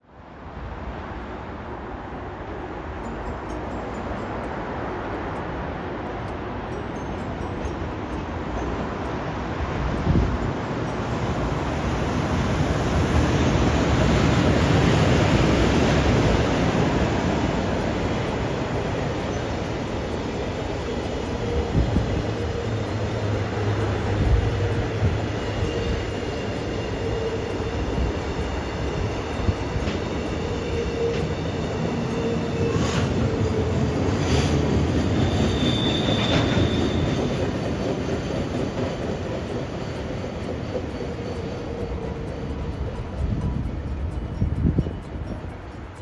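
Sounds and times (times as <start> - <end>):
train wheels rumbling on rail: 0.0 - 46.0
high wheel squeal: 11.0 - 43.4.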